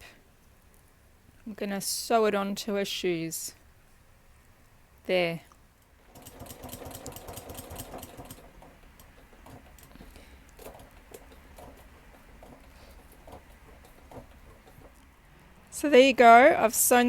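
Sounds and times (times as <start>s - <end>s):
sewing machine stitching: 6.0s - 15.0s.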